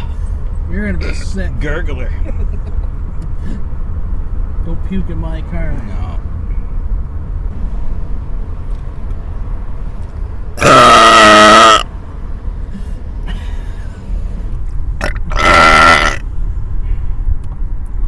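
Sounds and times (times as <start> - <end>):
moving car rumble: 0.0 - 18.0
person belching: 1.0 - 1.2, 10.6 - 11.9, 15.0 - 16.2.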